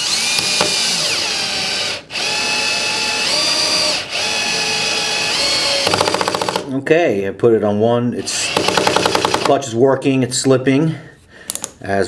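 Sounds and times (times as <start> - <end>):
cordless drill motor whine: 0.0 - 6.6.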